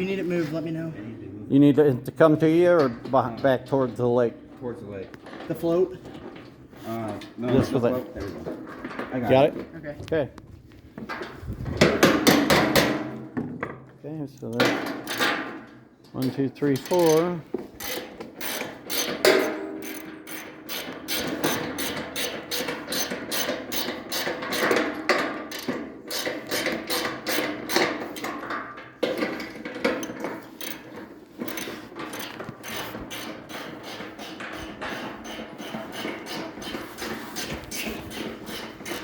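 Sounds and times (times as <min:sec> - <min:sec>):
ratchet wrench clicking: 0:16.8 - 0:24.7, 0:30.0 - 0:36.2.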